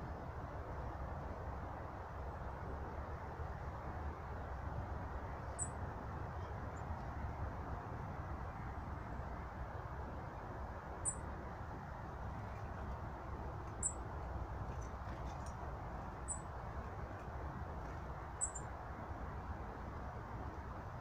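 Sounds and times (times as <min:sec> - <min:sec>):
low rushing background noise: 0:00.0 - 0:21.0
small bird chirping: 0:05.5 - 0:05.8, 0:13.7 - 0:14.0, 0:16.2 - 0:16.5, 0:18.4 - 0:18.7.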